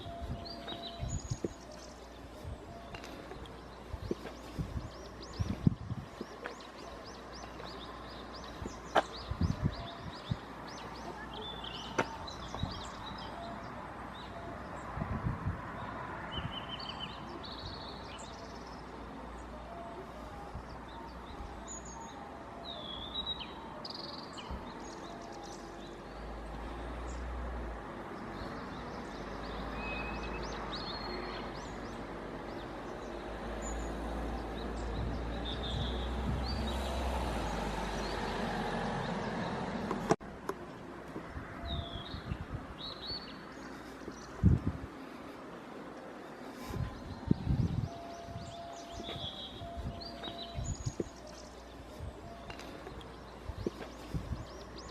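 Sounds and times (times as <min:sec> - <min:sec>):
small birds chirping: 0:00.0 - 0:15.0, 0:41.6 - 0:54.9.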